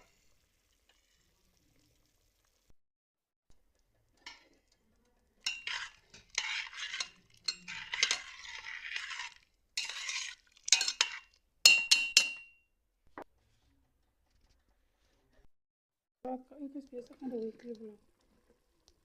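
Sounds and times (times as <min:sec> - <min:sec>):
metal clinking on pot: 0:05.4 - 0:12.6
metal utensil scraping cookware: 0:05.4 - 0:12.6.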